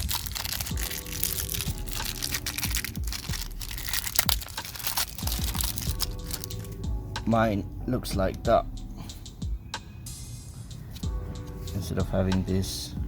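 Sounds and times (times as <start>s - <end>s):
car parts rustling and clicking: 0.0s - 6.8s
faint music: 0.0s - 13.0s.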